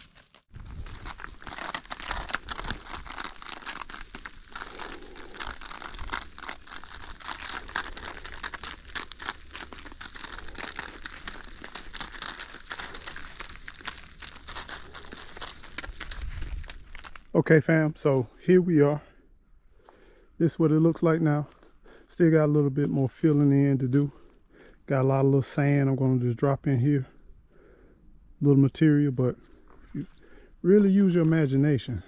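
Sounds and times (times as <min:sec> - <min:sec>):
dry leaves crunching: 0:00.0 - 0:17.4.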